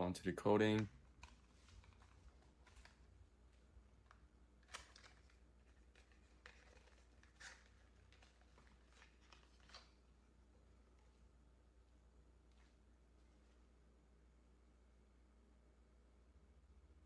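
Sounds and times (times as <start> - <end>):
small items clicking and rustling: 0.8 - 3.1, 4.0 - 10.0.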